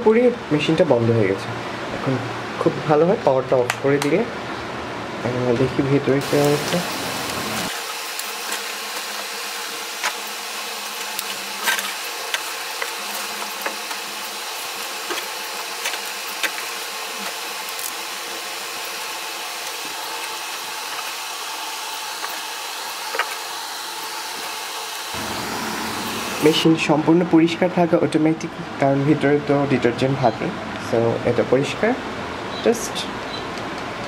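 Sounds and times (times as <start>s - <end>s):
steady hiss: 6.1s - 21.4s.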